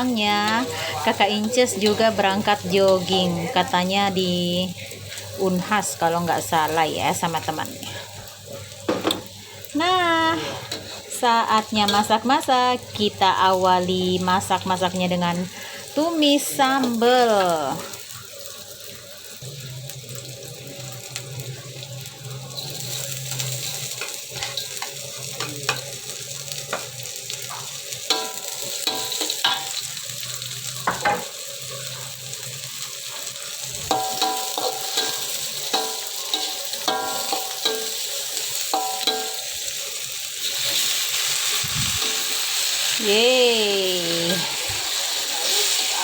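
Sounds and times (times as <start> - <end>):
sauce sizzling in hot oil: 0.0 - 46.0
spatula scraping a pan: 10.2 - 11.2, 33.4 - 39.4.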